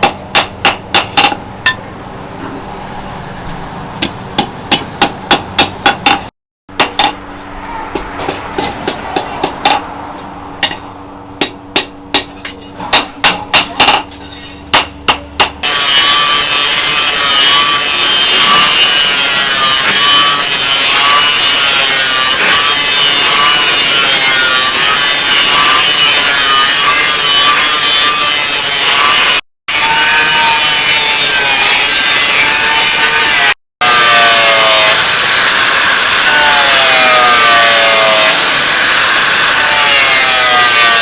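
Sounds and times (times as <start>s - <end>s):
power grinder on blade: 15.6s - 41.0s.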